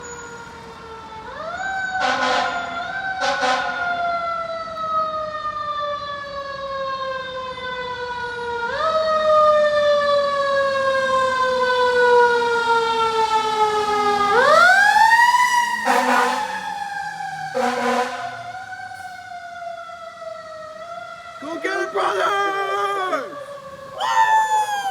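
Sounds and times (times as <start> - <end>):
air horn blasts: 15.8 - 16.6, 17.6 - 18.4.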